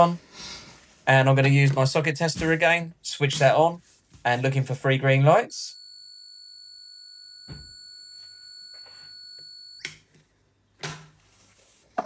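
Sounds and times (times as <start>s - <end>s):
socket tester high-pitched tone: 5.7s - 9.9s.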